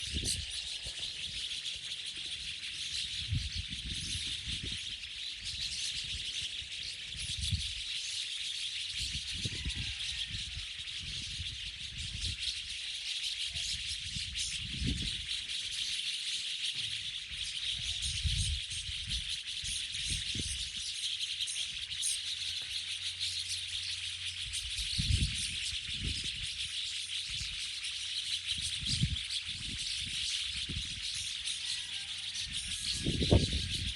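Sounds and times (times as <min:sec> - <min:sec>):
flock of birds chattering: 0:00.0 - 0:33.9.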